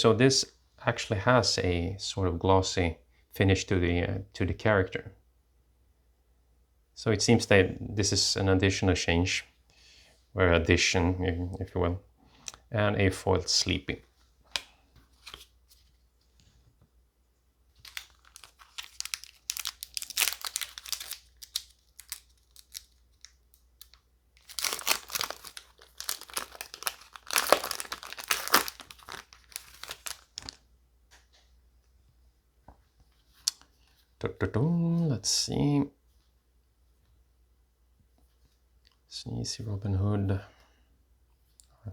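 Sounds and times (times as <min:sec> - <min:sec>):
foil wrapper tearing and crinkling: 0:17.8 - 0:30.6.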